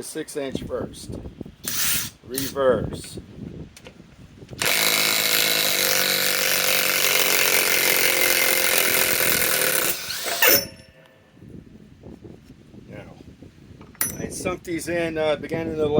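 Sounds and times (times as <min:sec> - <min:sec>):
impact wrench hammering: 0:04.6 - 0:11.0.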